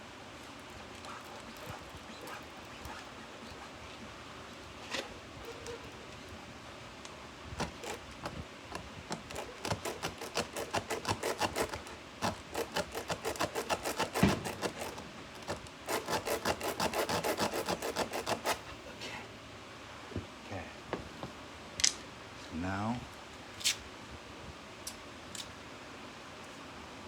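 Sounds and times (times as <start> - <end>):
rasp reamer scraping rubber tire: 0.5 - 3.5, 4.8 - 6.2, 7.6 - 18.7.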